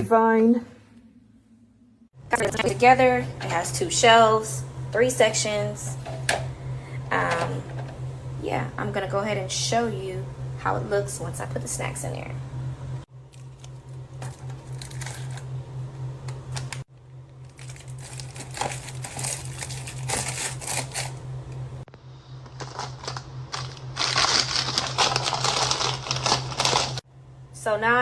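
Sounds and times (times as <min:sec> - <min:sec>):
plastic snack bags rustling: 0:17.4 - 0:21.2, 0:22.4 - 0:27.0.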